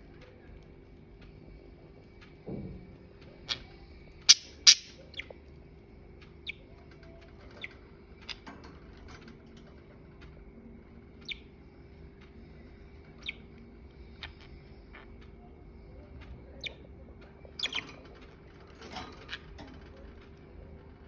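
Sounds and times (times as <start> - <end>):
budgerigars chirping: 4.3 - 5.3, 17.6 - 18.0.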